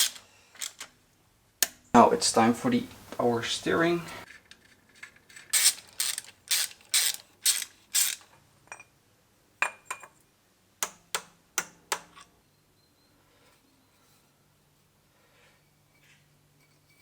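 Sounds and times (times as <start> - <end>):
ratchet wrench clicking: 5.4 - 8.2.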